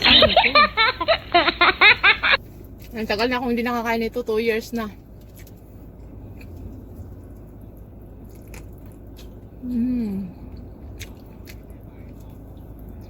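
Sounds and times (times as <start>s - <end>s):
person chewing: 5.2s - 13.0s
person humming mmm: 9.6s - 10.5s.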